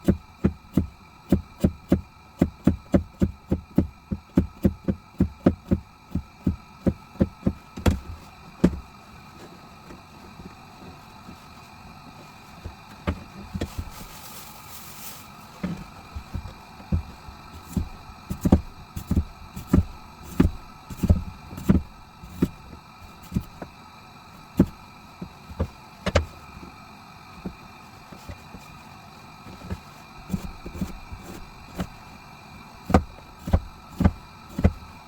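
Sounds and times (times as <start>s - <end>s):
dull knocks and thumps: 0.0s - 23.8s, 24.4s - 26.8s, 27.4s - 35.0s
faint steady hum: 0.0s - 35.0s.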